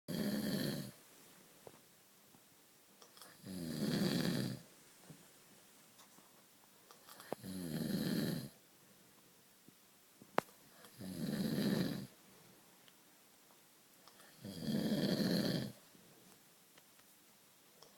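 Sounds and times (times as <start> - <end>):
rasping snores: 0.1 - 1.0, 3.2 - 4.6, 7.2 - 8.6, 10.8 - 12.1, 14.2 - 15.8.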